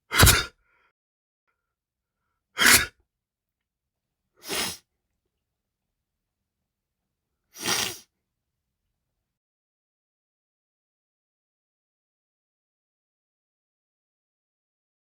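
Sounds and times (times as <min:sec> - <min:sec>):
person sneezing: 0:00.1 - 0:00.5, 0:02.6 - 0:02.9, 0:04.4 - 0:04.8, 0:07.6 - 0:08.0.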